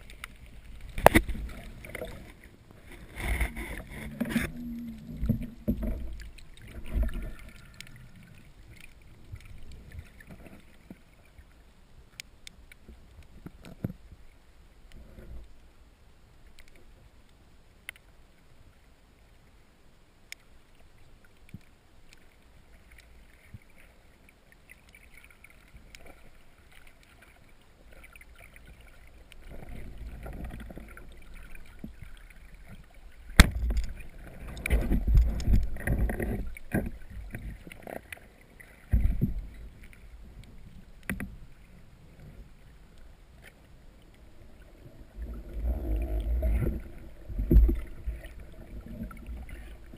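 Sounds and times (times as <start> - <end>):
water splashing underwater: 0.0 - 11.2, 24.9 - 41.8, 44.6 - 49.9
faint clicks: 0.0 - 18.6, 20.2 - 44.2.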